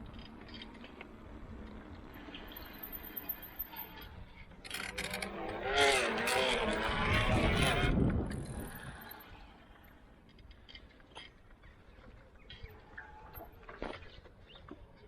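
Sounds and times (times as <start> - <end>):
electric bike motor running: 4.7 - 9.4.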